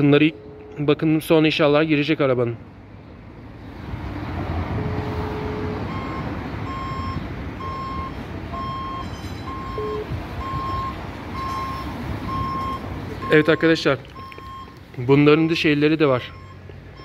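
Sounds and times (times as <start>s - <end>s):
engine rumble: 0.0s - 17.0s
reversing alarm beeping: 4.8s - 14.8s, 16.2s - 17.0s.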